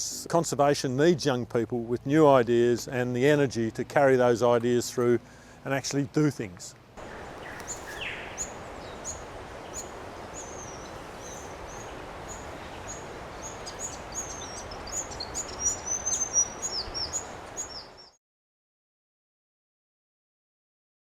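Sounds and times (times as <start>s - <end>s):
outdoor background hiss: 0.0s - 18.2s
wild birds calling: 7.0s - 18.2s.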